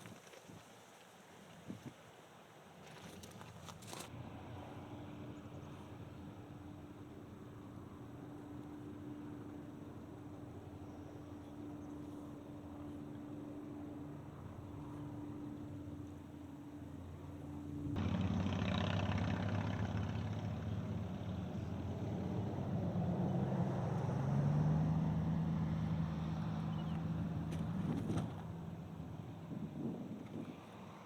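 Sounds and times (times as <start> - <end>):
motor vehicle passing by: 17.3 - 31.0.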